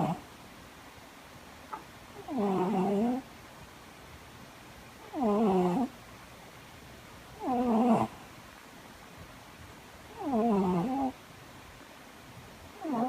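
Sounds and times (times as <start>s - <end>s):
cat snoring: 2.2s - 3.2s, 5.0s - 5.9s, 7.4s - 8.2s, 10.1s - 11.2s, 12.8s - 13.0s.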